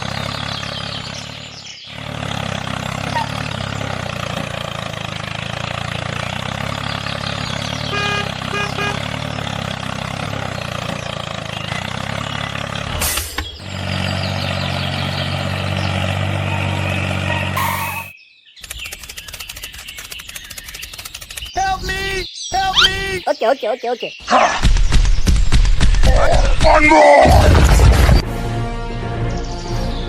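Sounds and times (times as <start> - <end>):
tractor engine running: 0.0 - 23.6.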